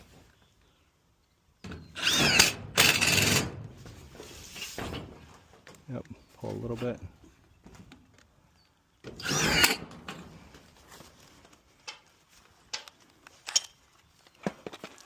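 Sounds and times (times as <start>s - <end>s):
power drill whining: 1.9s - 3.5s, 9.2s - 9.8s.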